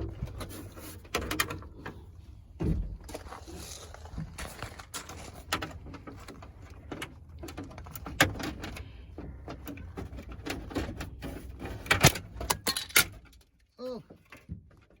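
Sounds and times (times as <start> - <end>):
tools clicking and rattling: 5.3 - 13.7.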